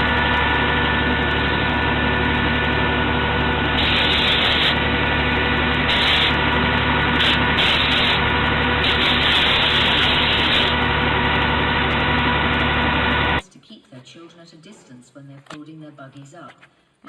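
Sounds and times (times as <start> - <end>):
steady machine hum: 0.0 - 13.4
rasping sanding strokes: 3.8 - 4.8, 5.8 - 6.4, 7.2 - 10.8.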